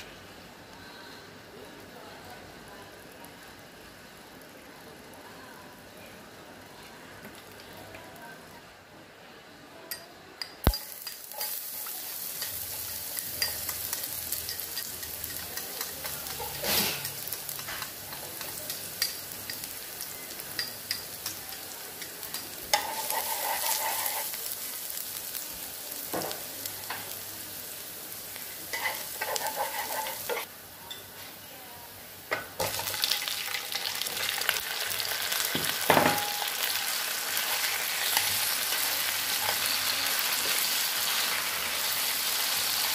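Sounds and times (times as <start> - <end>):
chicken wings sizzling in a pan: 10.4 - 42.9.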